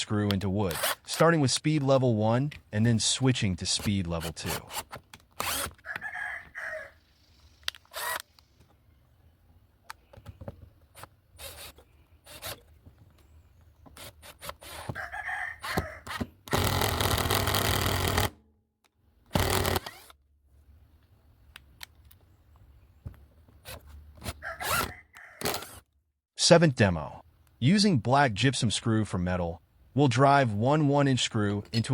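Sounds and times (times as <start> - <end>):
impact driver hammering: 19.4 - 20.0.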